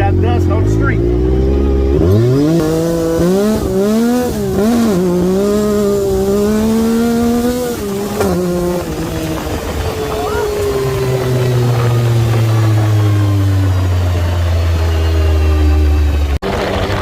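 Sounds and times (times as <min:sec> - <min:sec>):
vehicle engine accelerating: 0:00.0 - 0:17.0.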